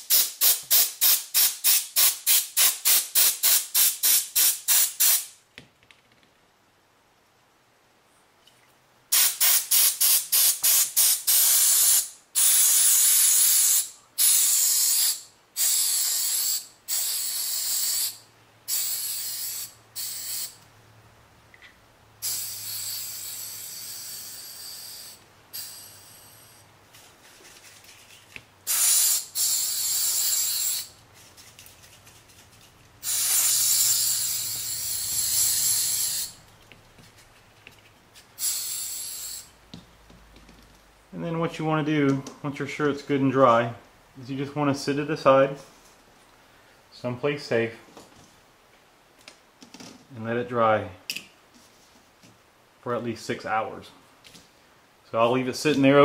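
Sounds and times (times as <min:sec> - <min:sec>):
compressed air blasts: 0:00.0 - 0:05.4, 0:09.1 - 0:20.6, 0:22.2 - 0:26.6, 0:28.6 - 0:31.0, 0:33.0 - 0:36.4, 0:38.3 - 0:39.6.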